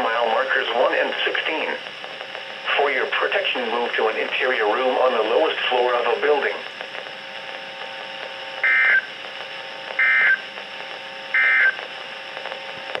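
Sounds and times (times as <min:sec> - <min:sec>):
steady radio hiss: 0:00.0 - 0:13.0
digital data tone bursts: 0:08.6 - 0:09.1, 0:10.0 - 0:10.4, 0:11.3 - 0:11.8.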